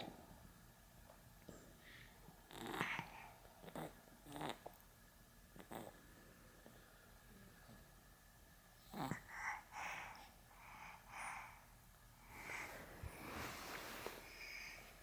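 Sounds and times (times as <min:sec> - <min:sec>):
pet snoring snuffles: 0:02.5 - 0:04.6, 0:08.9 - 0:09.3.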